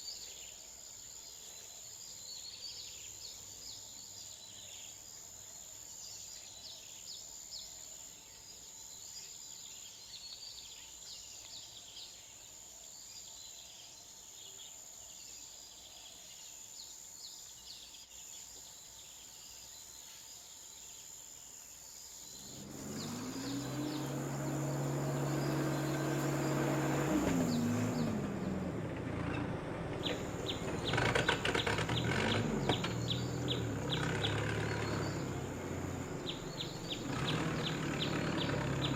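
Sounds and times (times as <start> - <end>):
high insect tone: 0.0 - 28.1, 30.0 - 38.9
birds and insects chirping: 0.0 - 38.9.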